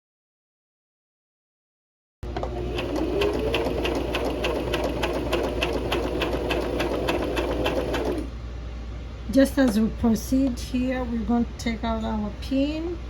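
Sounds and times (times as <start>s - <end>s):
sewing machine motor hum: 2.2s - 8.3s
sewing needle mechanism ticking: 2.4s - 8.3s.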